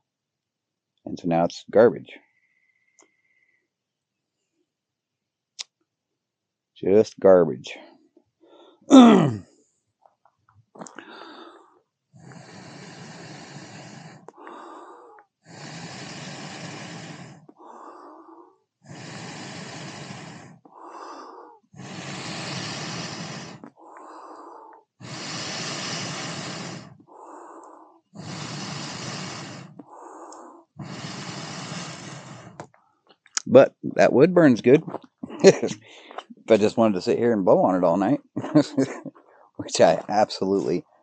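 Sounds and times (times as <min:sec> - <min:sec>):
person blowing on fire: 0:08.9 - 0:09.4, 0:12.2 - 0:14.8, 0:15.4 - 0:18.0, 0:18.8 - 0:24.2, 0:25.0 - 0:27.5, 0:28.1 - 0:32.6
person breathing in: 0:10.8 - 0:32.6, 0:35.2 - 0:36.3.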